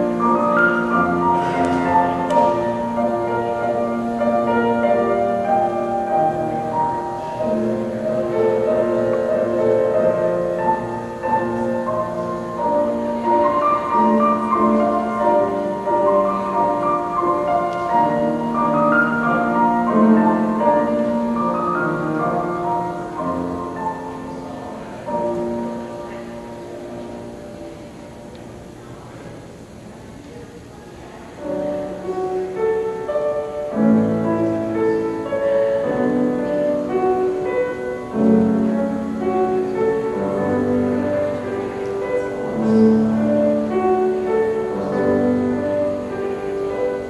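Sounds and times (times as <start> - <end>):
slow classical piano music: 0.0 - 47.0.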